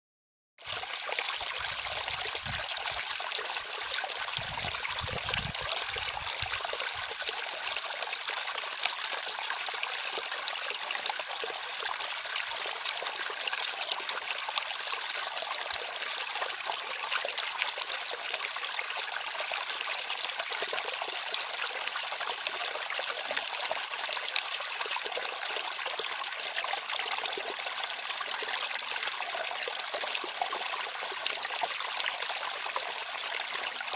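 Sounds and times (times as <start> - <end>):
water flowing and trickling: 0.6 - 33.9.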